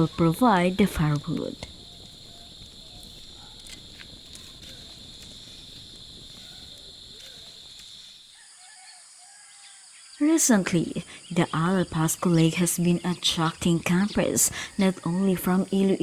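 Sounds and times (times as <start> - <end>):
faint clicks: 0.0 - 8.1
crickets chirring: 0.0 - 16.0
distant chickens calling: 0.0 - 16.0.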